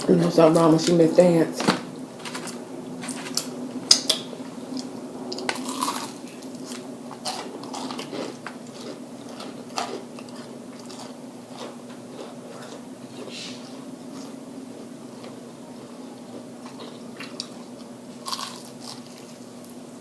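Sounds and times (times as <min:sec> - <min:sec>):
wet chewing: 0:03.3 - 0:19.4
crunching bites of food: 0:05.4 - 0:13.2, 0:14.1 - 0:19.7.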